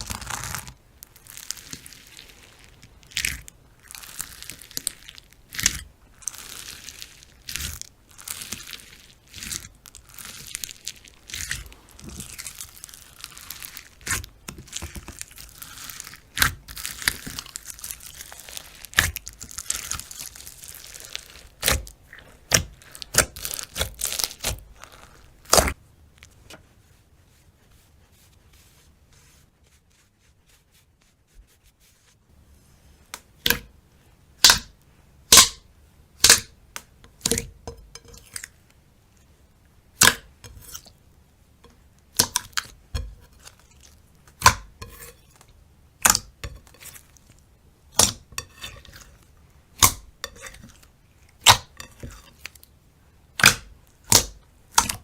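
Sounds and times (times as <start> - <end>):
slime crackling and popping: 0.0 - 26.3, 34.4 - 35.6, 36.2 - 38.5, 42.1 - 52.7, 53.4 - 55.0.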